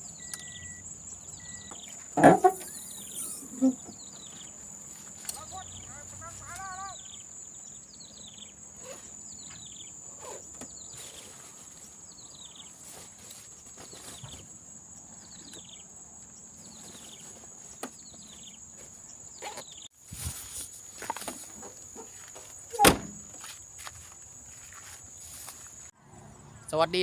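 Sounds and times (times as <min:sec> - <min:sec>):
insects trilling high: 0:00.0 - 0:27.0
short falling calls: 0:02.2 - 0:04.0, 0:05.3 - 0:07.2.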